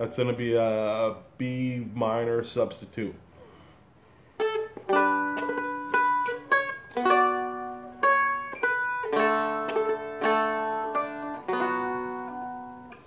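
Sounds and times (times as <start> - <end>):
strummed dulcimer chords: 4.5 - 13.0.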